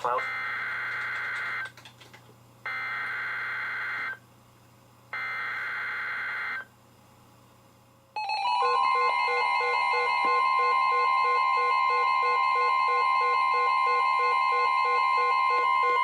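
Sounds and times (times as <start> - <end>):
steady alert tone: 8.2 - 15.4.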